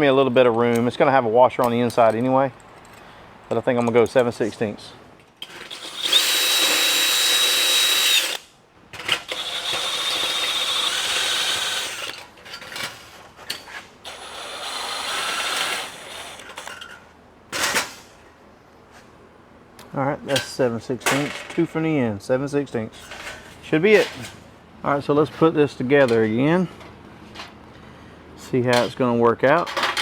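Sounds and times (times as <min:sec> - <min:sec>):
electric drill drilling metal: 0:05.6 - 0:08.5, 0:09.1 - 0:12.2, 0:14.1 - 0:16.7.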